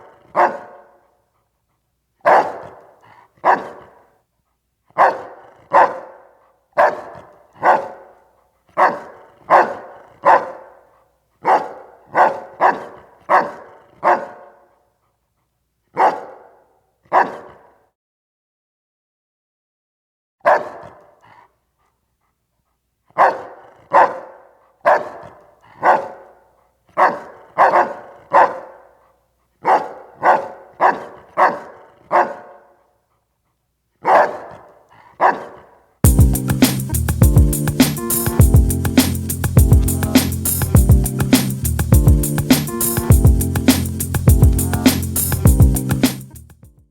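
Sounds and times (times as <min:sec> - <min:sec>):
puppy barking: 0:00.0 - 0:01.0, 0:02.2 - 0:04.0, 0:05.0 - 0:08.2, 0:08.8 - 0:14.7, 0:16.0 - 0:17.8, 0:20.4 - 0:21.5, 0:23.2 - 0:32.8, 0:34.0 - 0:36.9.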